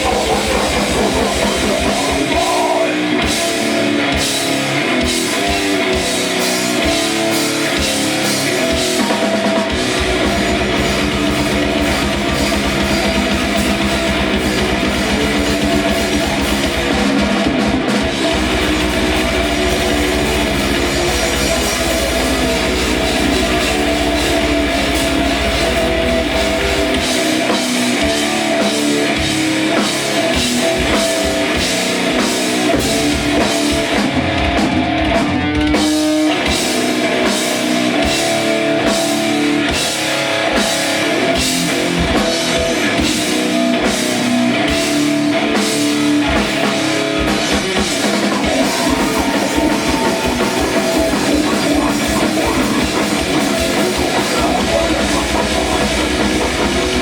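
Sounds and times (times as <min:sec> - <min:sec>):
rock band playing live: 0:00.0 - 0:57.0.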